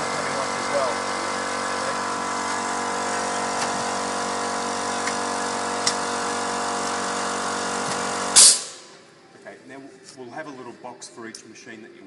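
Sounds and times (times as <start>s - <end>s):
machinery humming: 0.0s - 9.1s.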